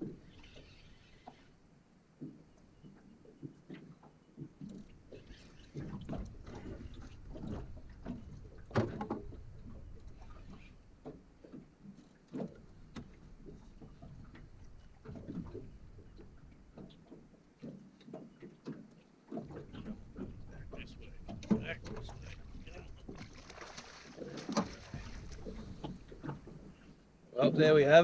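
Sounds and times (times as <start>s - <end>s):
fishing gear and hull knocking: 0.0s - 27.2s
wind rumbling on microphone: 24.6s - 26.7s.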